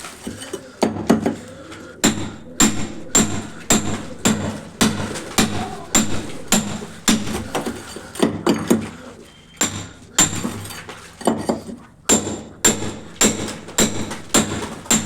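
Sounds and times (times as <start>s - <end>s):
hammer striking metal: 2.0s - 7.8s, 9.6s - 10.9s, 12.1s - 15.0s.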